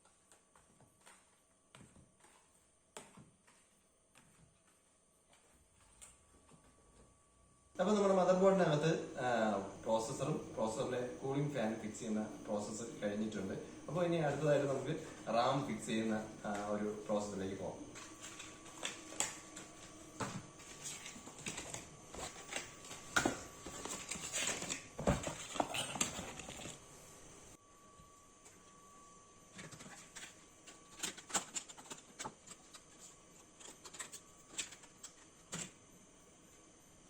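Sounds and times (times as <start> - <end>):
light clicks of handling computer parts: 29.6 - 35.8.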